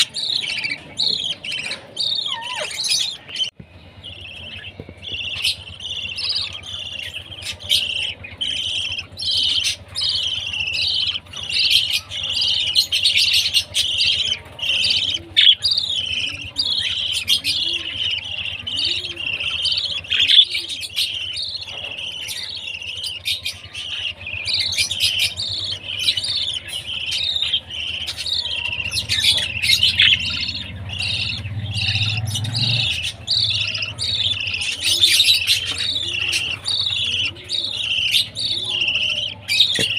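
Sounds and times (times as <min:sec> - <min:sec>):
budgerigar chicks chirping: 0:00.0 - 0:39.9.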